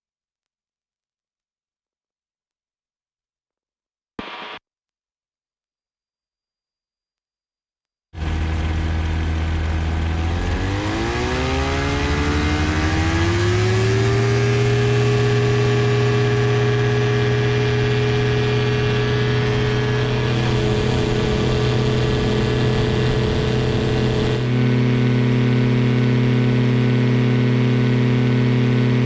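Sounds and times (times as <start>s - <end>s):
aircraft engine throttling up: 8.2s - 29.0s.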